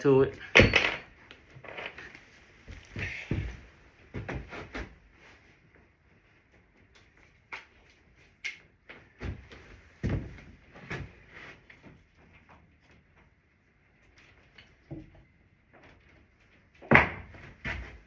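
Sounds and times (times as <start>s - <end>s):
wooden boards knocking and thumping: 16.8s - 17.8s.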